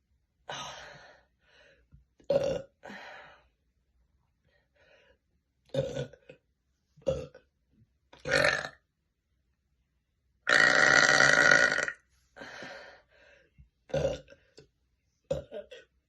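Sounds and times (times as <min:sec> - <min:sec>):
woman burping: 0:02.3 - 0:02.7, 0:05.7 - 0:06.2, 0:08.2 - 0:08.8, 0:10.5 - 0:12.0, 0:13.9 - 0:14.3, 0:15.3 - 0:15.9.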